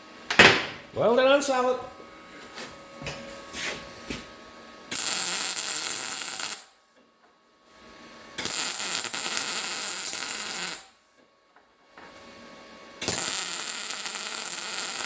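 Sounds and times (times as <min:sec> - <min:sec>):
arc welding crackling hiss: 0:04.9 - 0:06.8, 0:08.4 - 0:11.0, 0:13.0 - 0:15.0.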